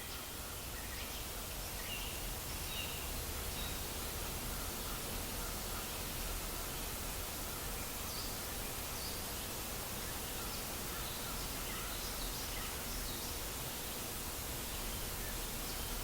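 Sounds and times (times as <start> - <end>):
faint birdsong chirps: 0.0 - 16.0
steady white-noise hiss: 0.0 - 16.0.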